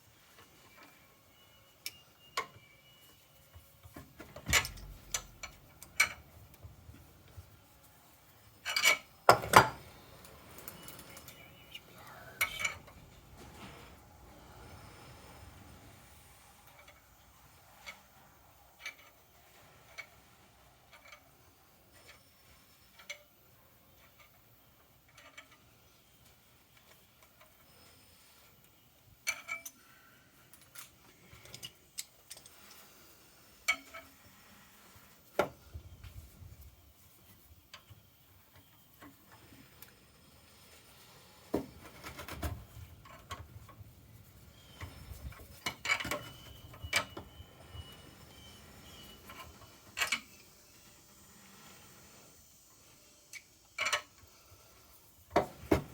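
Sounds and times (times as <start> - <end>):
metal parts clinking and knocking: 8.4 - 11.4, 29.2 - 29.8, 44.7 - 47.2.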